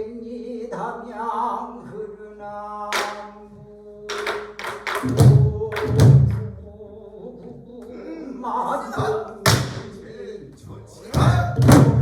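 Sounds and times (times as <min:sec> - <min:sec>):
deep drum booms: 0:11.2 - 0:12.0.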